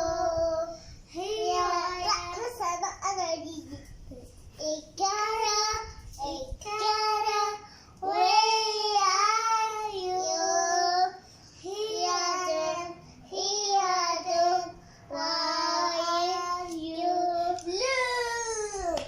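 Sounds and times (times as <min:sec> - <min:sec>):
young child singing: 0:00.0 - 0:19.0.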